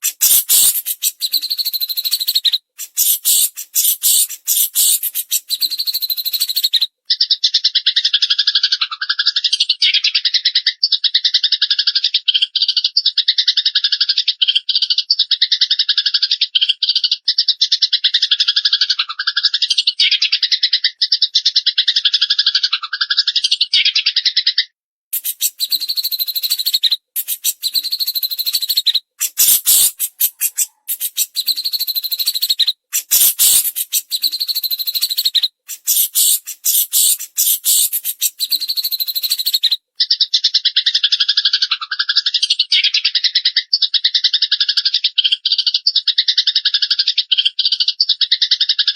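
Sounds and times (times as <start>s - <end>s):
fast buzzy bird trill: 0.0s - 6.8s, 25.2s - 39.8s
sharp rapid bird chirps: 0.0s - 6.9s, 25.2s - 40.2s.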